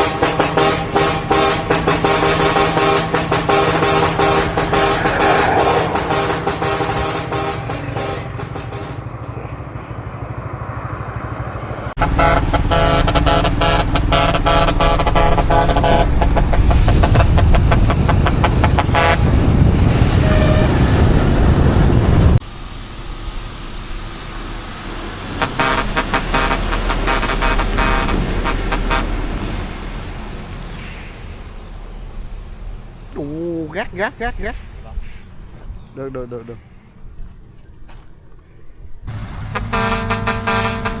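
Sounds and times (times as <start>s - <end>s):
multi-note air horn: 0.0s - 9.4s, 12.0s - 19.3s, 20.2s - 21.1s, 25.4s - 29.5s, 39.5s - 41.0s
truck diesel engines rumbling: 0.0s - 41.0s.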